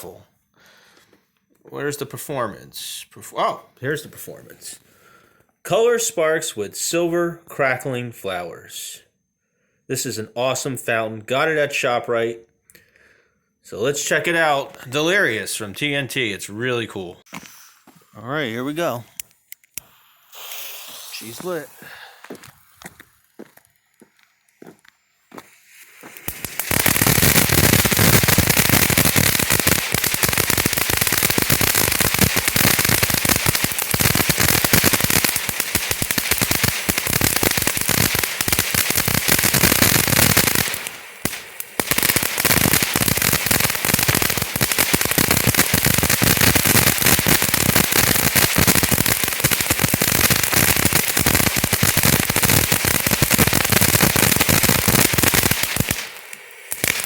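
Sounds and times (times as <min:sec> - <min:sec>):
firework fountain hissing and crackling: 0:17.3 - 0:17.8, 0:19.8 - 0:24.5, 0:25.3 - 0:57.0.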